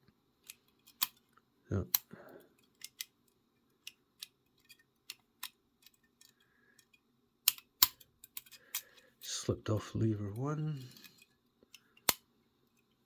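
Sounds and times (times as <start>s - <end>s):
lock pick clicking in padlock: 7.4s - 8.9s.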